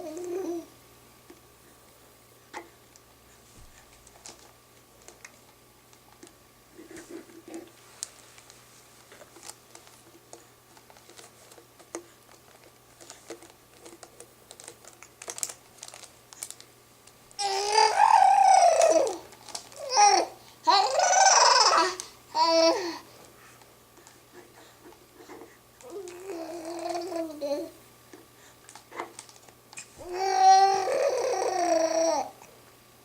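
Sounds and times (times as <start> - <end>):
baby squealing: 17.4 - 19.2, 19.8 - 22.9.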